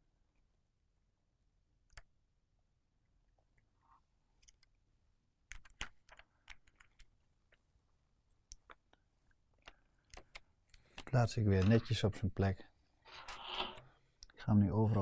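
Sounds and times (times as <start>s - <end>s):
faint clicks and light taps: 8.3s - 11.8s.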